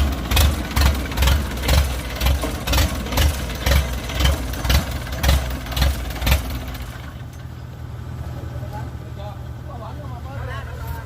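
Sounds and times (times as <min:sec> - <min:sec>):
combine harvester running: 0:00.0 - 0:11.0.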